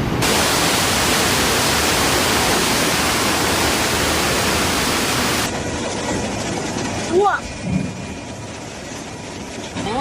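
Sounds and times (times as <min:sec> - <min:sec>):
floodwater rushing: 0:00.0 - 0:05.5.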